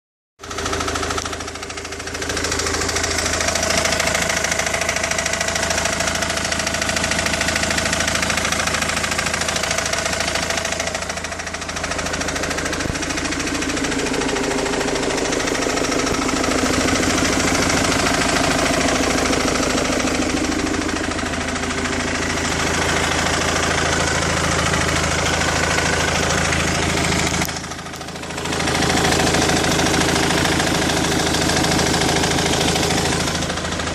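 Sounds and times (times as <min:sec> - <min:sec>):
car engine running steadily: 0:00.4 - 0:33.9.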